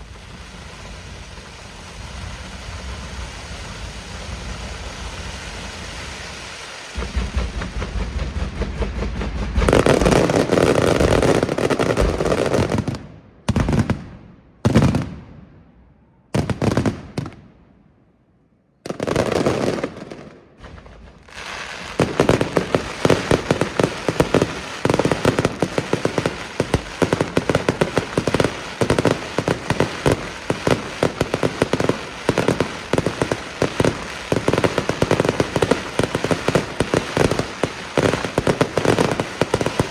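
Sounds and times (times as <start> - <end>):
heavy firework bangs ringing: 0.0 - 15.3, 20.0 - 39.9
rapid crackle of firework bangs: 0.0 - 15.3, 18.9 - 39.9
rumble of fireworks explosions: 0.0 - 18.2, 18.8 - 39.9.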